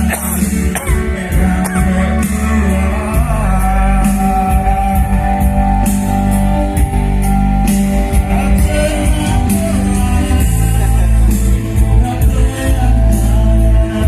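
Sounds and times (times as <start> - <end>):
person singing long notes: 0.0 - 6.3
steady bass and beat: 0.0 - 14.0.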